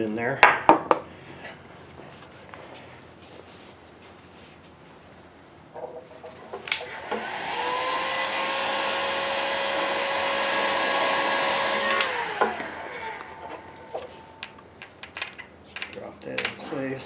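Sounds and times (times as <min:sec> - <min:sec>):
heat gun fan whine: 0:06.7 - 0:16.6.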